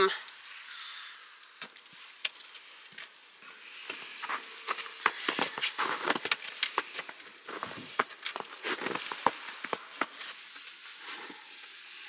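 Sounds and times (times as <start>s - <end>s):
soft rustling: 1.7s - 11.9s.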